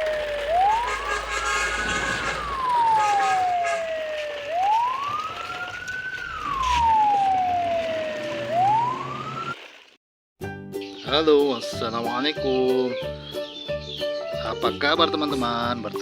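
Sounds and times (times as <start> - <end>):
wailing siren: 0.0 - 9.8.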